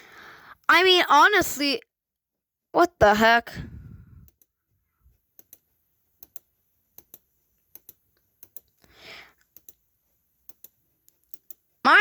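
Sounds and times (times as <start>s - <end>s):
faint computer clicks: 5.3s - 11.7s.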